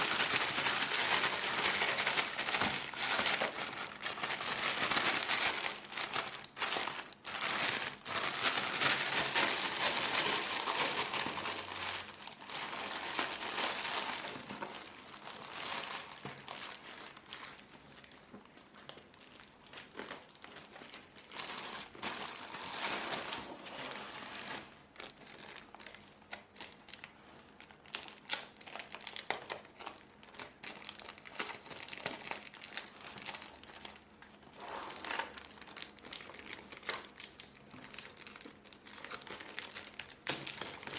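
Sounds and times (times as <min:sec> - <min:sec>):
plastic packaging crinkling: 0:00.0 - 0:40.9.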